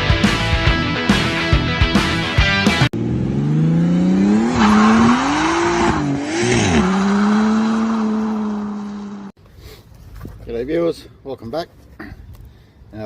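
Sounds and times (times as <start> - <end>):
car engine revving: 2.8 - 9.4
rushing tyre squeal noise: 4.4 - 9.3.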